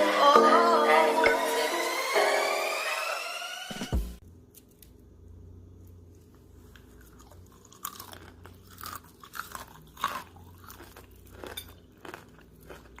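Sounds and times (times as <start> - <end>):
person chewing crunchy food: 6.6 - 13.0.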